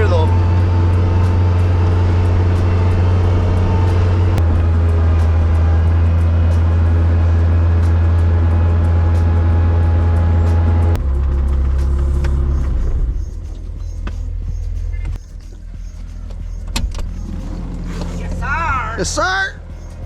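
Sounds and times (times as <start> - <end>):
snow plow engine running: 0.0 - 13.0.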